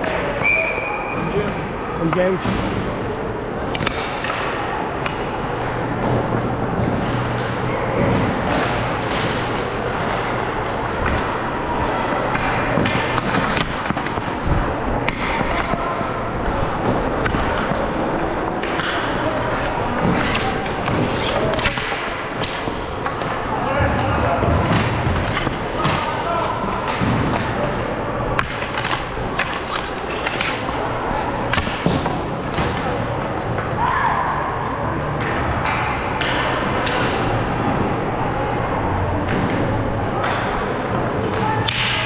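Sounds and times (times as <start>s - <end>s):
sticks hitting a ball: 16.8s - 23.4s, 28.4s - 32.8s.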